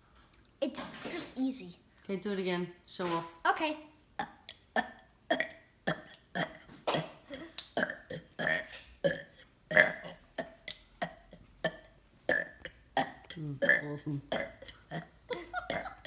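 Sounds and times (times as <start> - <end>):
person burping: 4.2 - 16.0.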